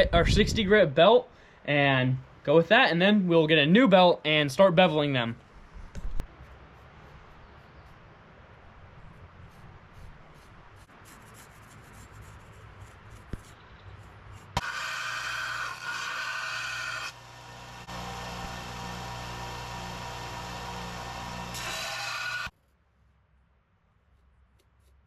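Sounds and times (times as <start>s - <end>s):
belt grinder grinding with whine: 14.6s - 22.5s.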